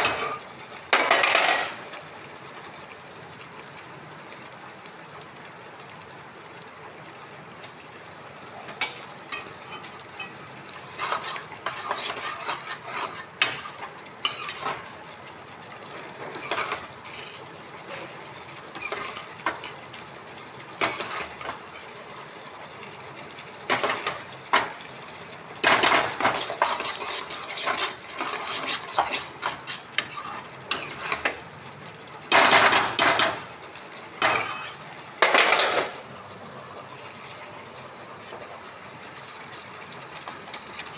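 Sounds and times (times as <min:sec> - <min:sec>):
metal utensil scraping pan: 0:00.0 - 0:02.0, 0:08.7 - 0:15.0, 0:15.7 - 0:19.8, 0:20.8 - 0:22.0, 0:23.7 - 0:24.8, 0:25.6 - 0:31.4, 0:32.3 - 0:33.5, 0:34.2 - 0:36.0.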